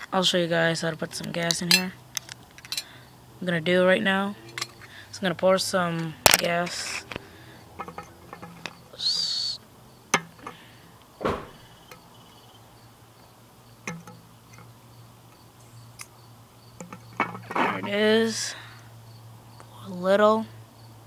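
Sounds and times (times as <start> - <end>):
metal clicks and knocks: 6.0 - 8.8, 10.1 - 10.6, 13.8 - 14.7, 16.8 - 17.9.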